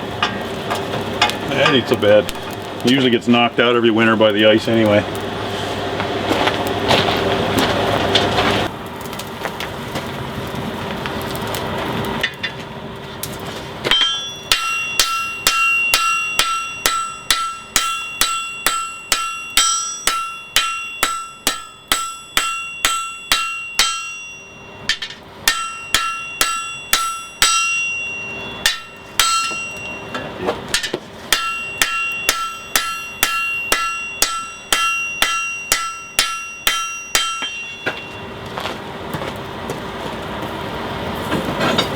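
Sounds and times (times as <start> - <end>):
hammer striking steel on anvil: 0.2 - 2.6, 13.9 - 38.4.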